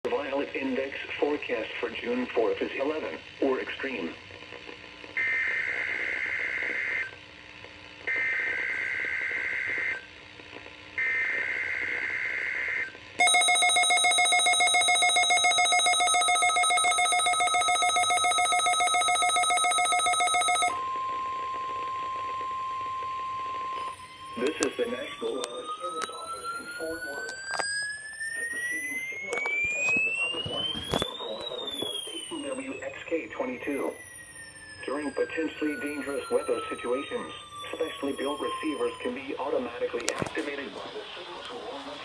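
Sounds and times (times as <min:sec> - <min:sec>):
rapidly pulsing alarm: 0:05.1 - 0:07.2, 0:08.0 - 0:10.3, 0:10.9 - 0:42.0
warbling digital data bursts: 0:23.8 - 0:39.8.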